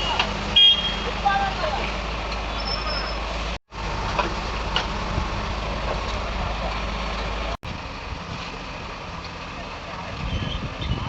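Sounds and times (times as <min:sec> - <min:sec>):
excavator diesel engine running: 0:03.2 - 0:10.8.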